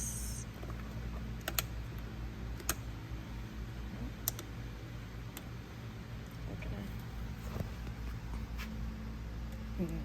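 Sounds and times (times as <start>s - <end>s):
low hum: 0.0s - 0.6s.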